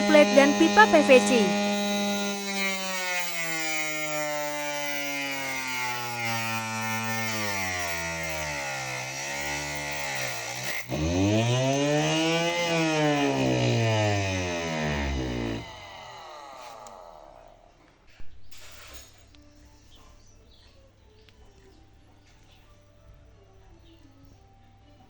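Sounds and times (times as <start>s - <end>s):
table saw motor running: 0.0s - 17.7s.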